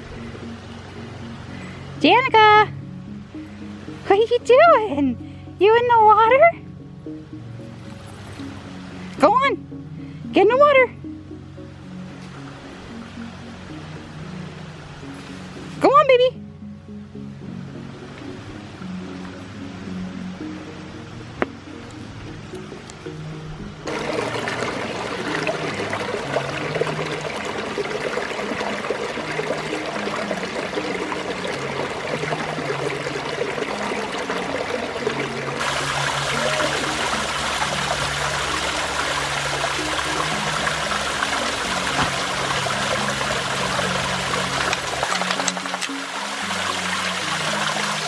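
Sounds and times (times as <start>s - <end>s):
soft background music: 0.0s - 48.0s
creek water rushing over rocks: 21.0s - 48.0s.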